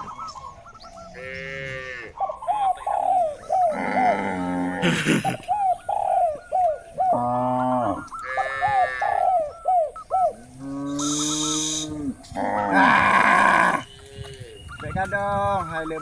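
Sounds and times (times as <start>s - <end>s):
cattle mooing: 3.6s - 5.4s, 7.0s - 9.3s, 10.4s - 14.8s
bird giving short calls: 10.2s - 12.0s.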